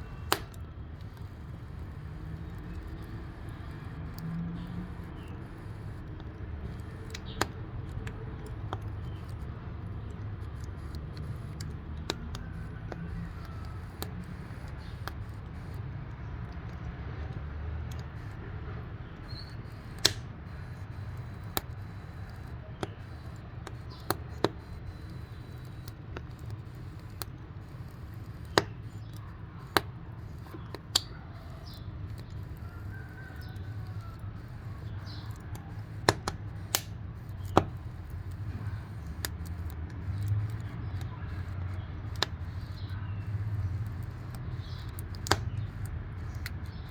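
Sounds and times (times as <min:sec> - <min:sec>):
fire crackling and popping: 0:00.0 - 0:46.9
wood fire rumbling: 0:21.0 - 0:46.9.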